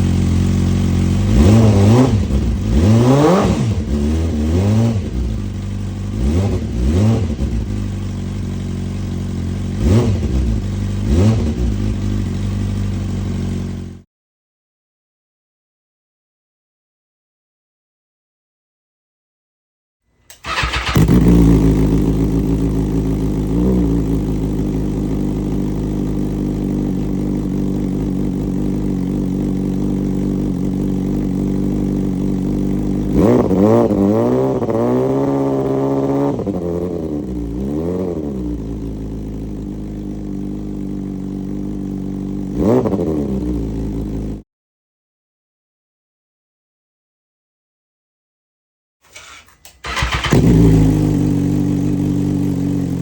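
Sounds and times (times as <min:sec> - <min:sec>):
motorcycle engine idling: 0:00.0 - 0:14.0, 0:20.4 - 0:33.4, 0:38.3 - 0:42.6, 0:49.8 - 0:53.0
motorcycle throttle blips: 0:20.3 - 0:44.4, 0:49.1 - 0:53.0.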